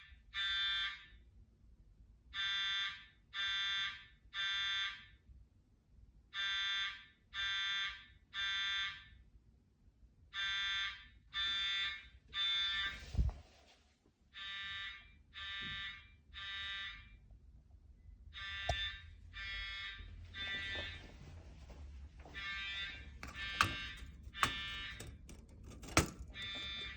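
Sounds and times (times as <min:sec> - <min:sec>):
fire alarm beeps: 0:02.4 - 0:05.0, 0:10.4 - 0:13.0, 0:14.4 - 0:17.2, 0:18.4 - 0:21.1, 0:22.3 - 0:26.9.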